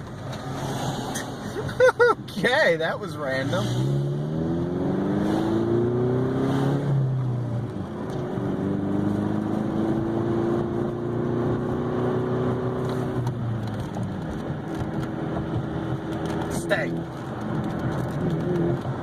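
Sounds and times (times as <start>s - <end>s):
car engine accelerating: 2.5s - 19.0s.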